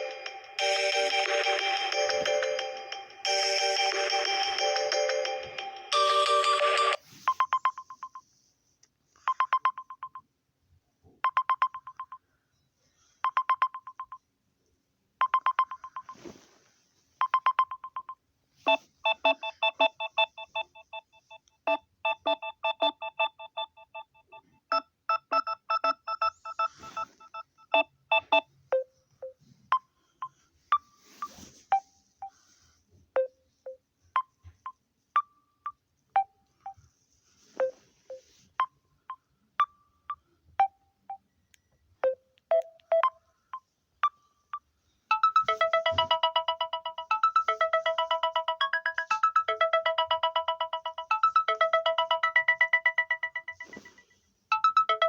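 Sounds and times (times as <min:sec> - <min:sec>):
phone ringtone melodies: 0:00.0 - 0:08.3, 0:15.2 - 0:16.3, 0:17.2 - 0:28.8, 0:29.7 - 0:32.6, 0:37.6 - 0:38.7, 0:42.0 - 0:55.0.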